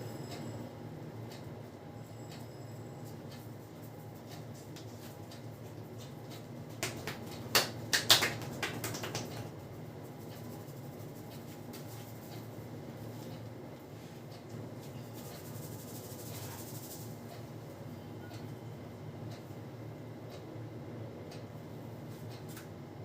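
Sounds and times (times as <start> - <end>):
low background hum: 0.0 - 23.0
hands clicking and slapping: 6.8 - 9.5.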